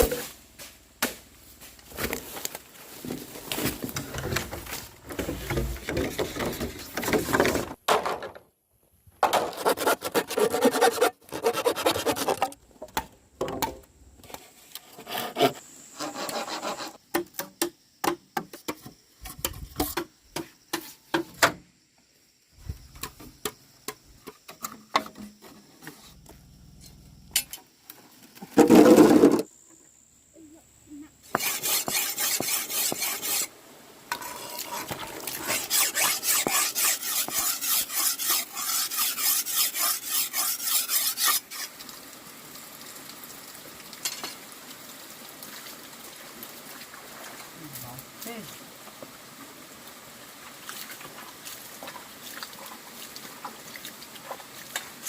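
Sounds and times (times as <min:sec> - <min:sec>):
scraping and rubbing: 0:09.4 - 0:12.6, 0:14.2 - 0:17.0, 0:31.3 - 0:33.5, 0:34.1 - 0:41.8.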